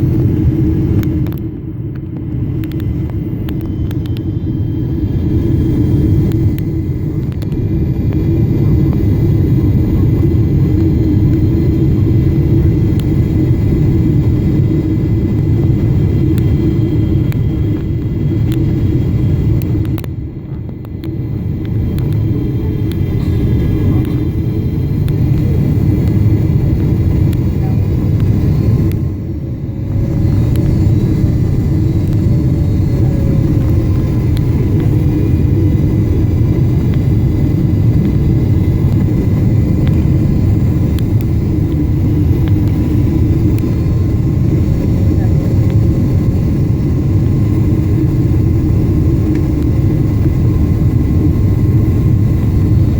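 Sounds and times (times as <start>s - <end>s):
jet engines rumbling: 0.0s - 52.9s.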